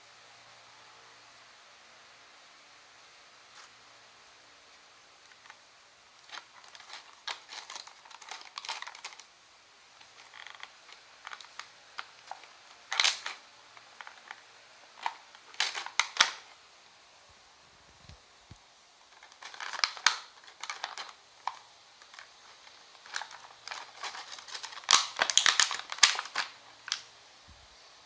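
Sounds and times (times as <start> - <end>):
handling clicks and rustles: 5.3 - 9.3, 10.0 - 16.5, 17.9 - 27.1.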